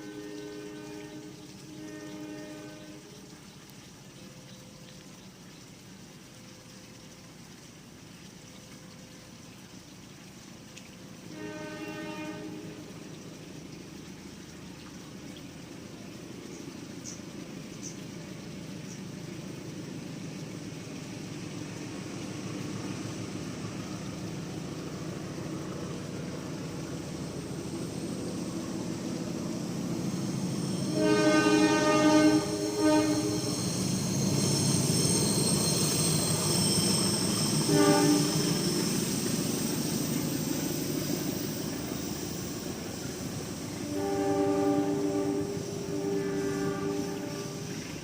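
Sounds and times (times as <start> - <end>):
train horn: 0.0 - 3.4, 11.2 - 13.3, 27.7 - 41.6, 43.2 - 48.0
train rumble: 9.4 - 48.0.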